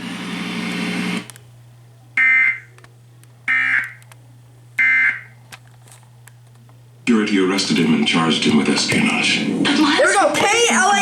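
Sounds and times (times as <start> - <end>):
harsh static: 0.0 - 1.4.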